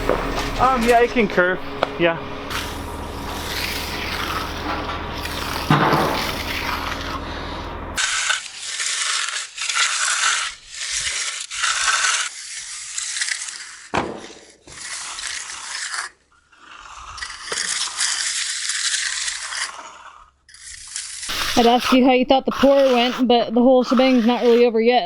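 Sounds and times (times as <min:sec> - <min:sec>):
low machine hum: 0:00.0 - 0:08.0
hand tools scraping wet concrete: 0:00.0 - 0:25.0.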